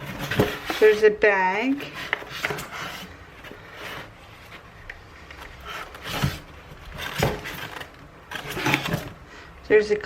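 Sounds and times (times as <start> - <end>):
packaging rustling: 1.8 - 9.3.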